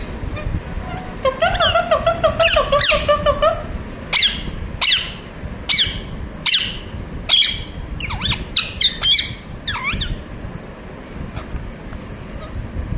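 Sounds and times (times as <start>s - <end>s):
parrot squawking: 0.3s - 10.2s.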